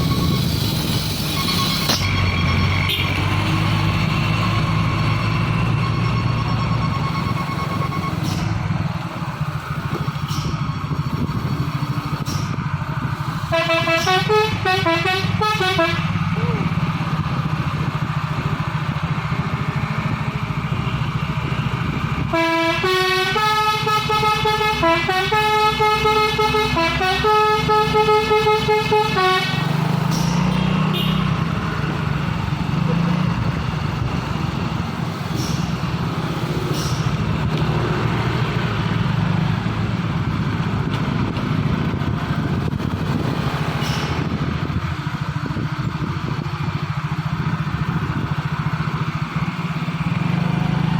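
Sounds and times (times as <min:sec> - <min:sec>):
truck engine running: 0:00.0 - 0:50.9
truck horn playing stepped tones: 0:13.4 - 0:16.3, 0:22.2 - 0:31.4.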